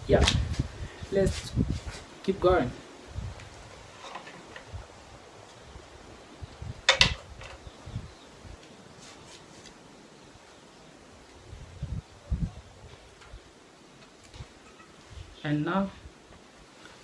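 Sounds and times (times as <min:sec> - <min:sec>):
parts knocking and clicking: 0:06.9 - 0:07.6.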